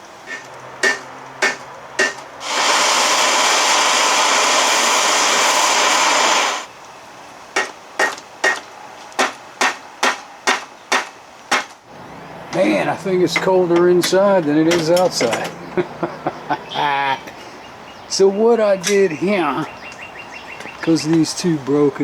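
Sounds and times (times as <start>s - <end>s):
hammer striking metal: 0.3s - 2.2s
loud steady hiss: 2.4s - 8.0s.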